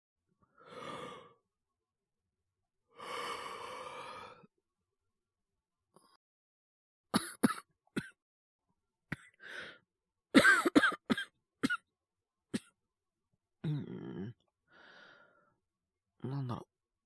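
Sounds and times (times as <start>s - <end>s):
man coughing: 7.2s - 8.1s, 10.4s - 11.8s.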